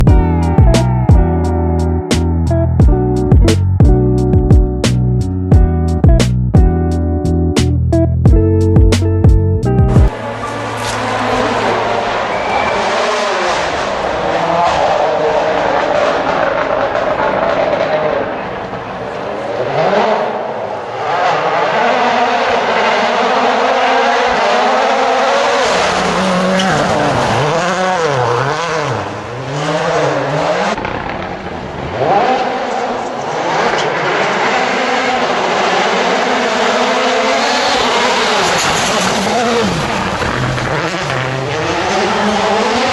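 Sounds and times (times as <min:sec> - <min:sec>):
tyre and road noise: 0:09.8 - 0:42.9
car engine revving hard: 0:10.1 - 0:42.9.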